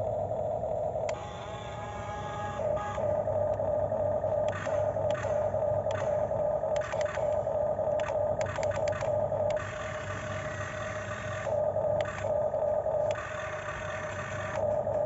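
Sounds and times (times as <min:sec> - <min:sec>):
electric motor and gears whining: 0:00.0 - 0:15.0
sharp clicks: 0:04.4 - 0:15.0.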